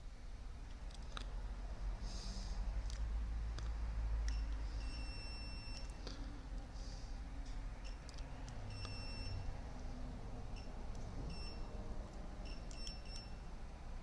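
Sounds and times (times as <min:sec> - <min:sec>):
multimeter beeping: 0:04.3 - 0:06.0, 0:08.7 - 0:09.5, 0:10.5 - 0:11.7, 0:12.4 - 0:13.5.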